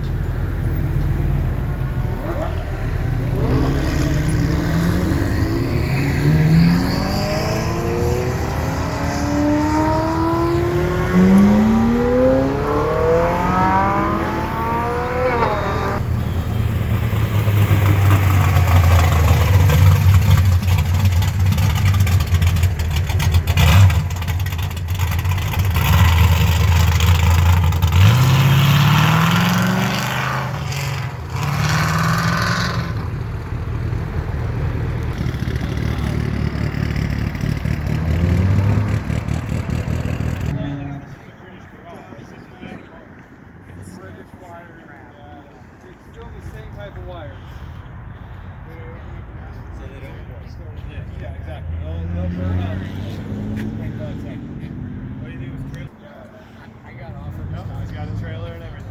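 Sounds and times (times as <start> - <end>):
car engine revving: 0.0 - 40.9, 51.2 - 55.9.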